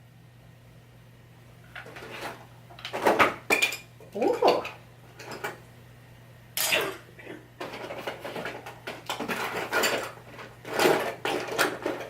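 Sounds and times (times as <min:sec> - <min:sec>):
plastic containers clattering: 0:07.6 - 0:12.0.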